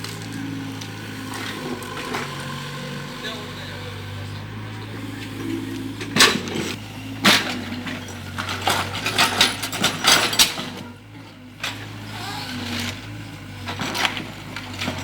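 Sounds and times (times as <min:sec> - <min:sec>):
excavator engine hum: 0:00.0 - 0:15.0
metallic knocks and clatter: 0:06.0 - 0:10.8.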